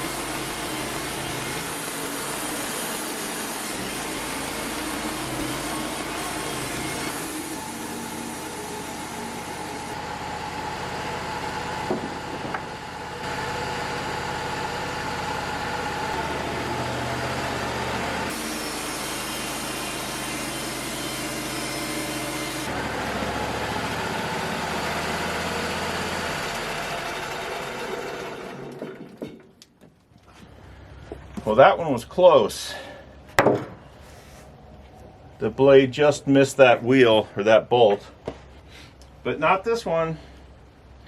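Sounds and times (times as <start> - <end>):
band sawmill cutting log: 0.0 - 29.3.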